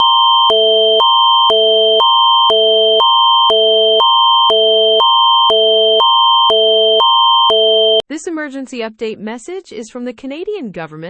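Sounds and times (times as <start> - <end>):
electronic emergency alarm: 0.0 - 8.0.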